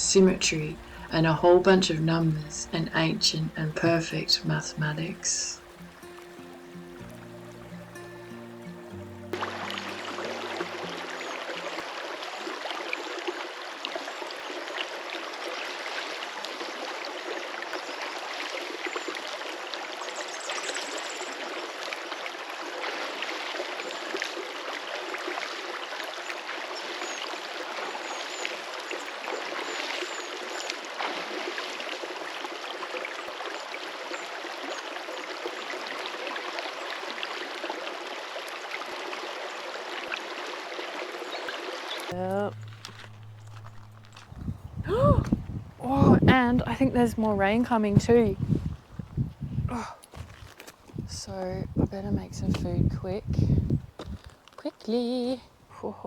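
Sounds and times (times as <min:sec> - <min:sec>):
river water rushing: 0:00.0 - 0:44.3.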